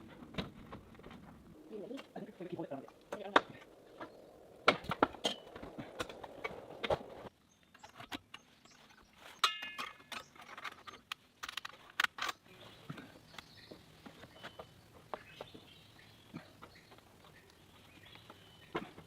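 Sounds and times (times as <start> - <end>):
parts clicking and knocking: 9.3 - 15.6.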